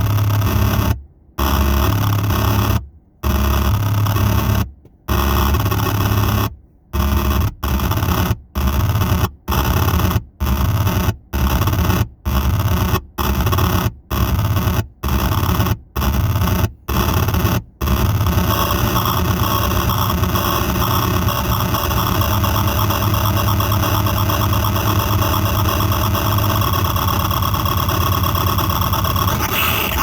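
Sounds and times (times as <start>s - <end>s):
harsh synthesizer noise bursts: 18.5s - 30.0s.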